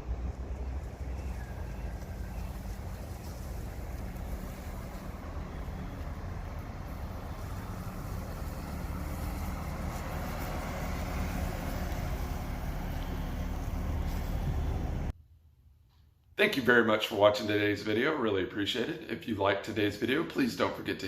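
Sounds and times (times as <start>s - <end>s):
car engine droning: 0.0s - 15.1s.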